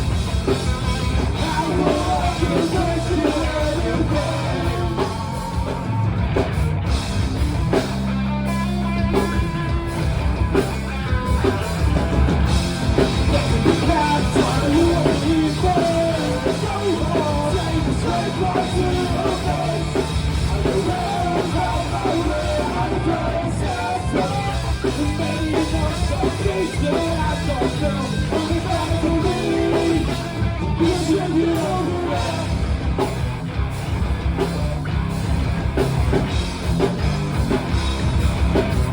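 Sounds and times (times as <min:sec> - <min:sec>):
rock band playing live: 0:00.0 - 0:38.9
person singing: 0:01.3 - 0:05.8, 0:13.3 - 0:32.6.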